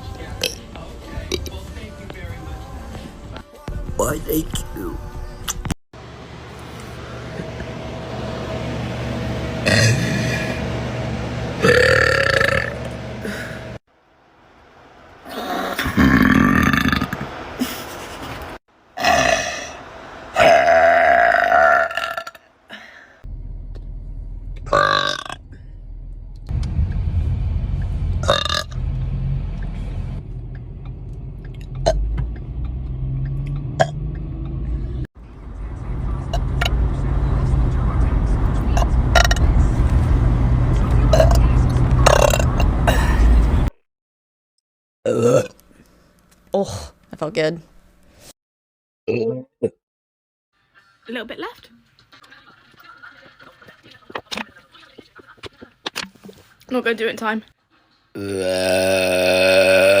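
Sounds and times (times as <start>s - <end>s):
long low burp: 9.6s - 10.6s, 11.6s - 12.8s, 19.0s - 19.8s, 20.4s - 22.4s, 42.0s - 43.1s, 45.1s - 45.5s, 58.2s - 60.0s
low steady rumble: 23.2s - 43.7s.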